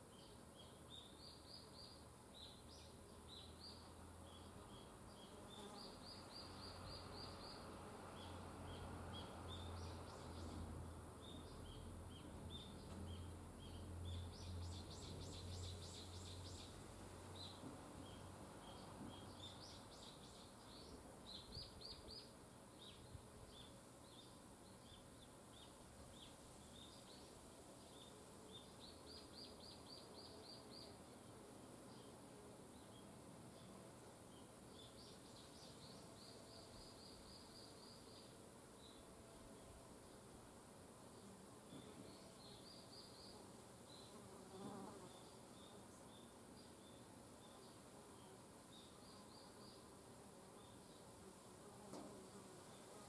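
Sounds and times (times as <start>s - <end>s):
small birds chirping: 11.2s - 31.0s, 31.9s - 39.8s, 41.7s - 49.9s.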